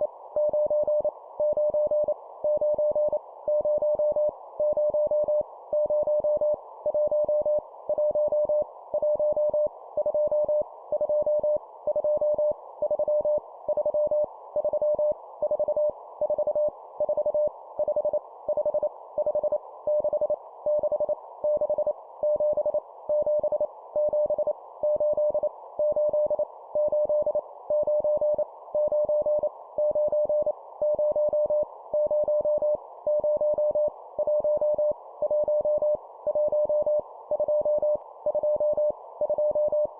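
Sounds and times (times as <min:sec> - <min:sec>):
morse code beeps: 0:00.4 - 0:39.9.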